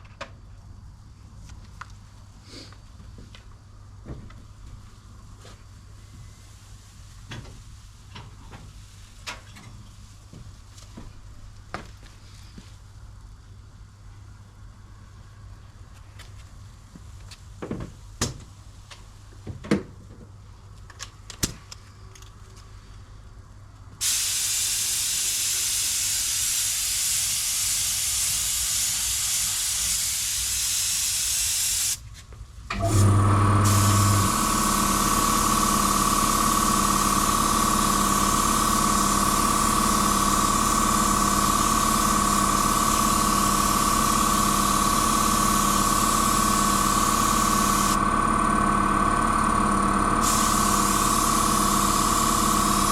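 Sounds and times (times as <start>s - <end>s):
paint spray gun hissing: 24.0s - 32.0s, 32.8s - 48.0s, 50.2s - 52.9s
motor whining: 32.8s - 52.9s.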